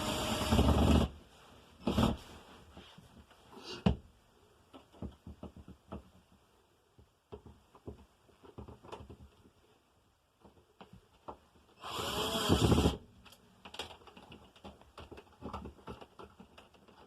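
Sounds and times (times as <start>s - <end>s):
objects clicking and tapping: 13.2s - 17.0s.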